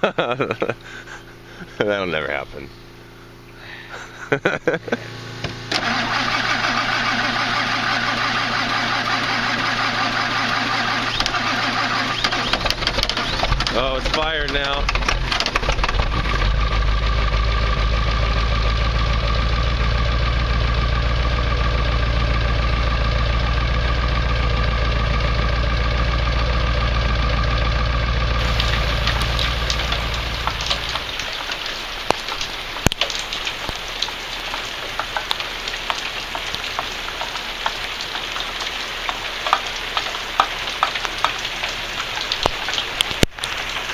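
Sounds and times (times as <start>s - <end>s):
diesel engine running: 0.0s - 43.9s
rain pattering: 5.8s - 27.7s, 28.3s - 43.9s
water drips: 28.4s - 43.9s.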